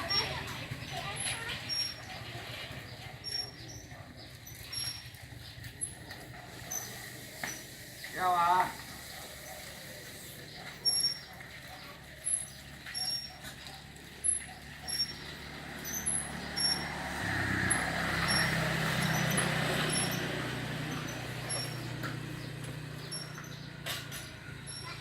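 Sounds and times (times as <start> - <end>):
vehicle passing by: 12.2 - 25.0.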